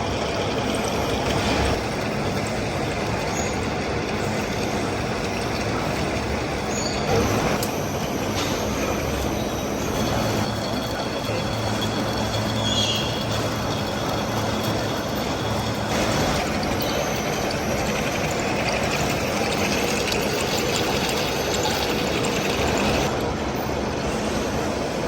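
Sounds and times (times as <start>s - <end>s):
heavy machinery running: 0.0s - 25.0s.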